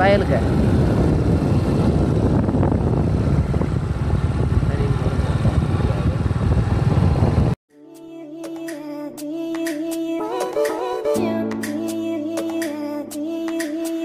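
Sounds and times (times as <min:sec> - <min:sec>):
motorcycle engine running: 0:00.0 - 0:07.6
wind rushing over microphone: 0:00.0 - 0:07.6
background music: 0:07.7 - 0:14.0.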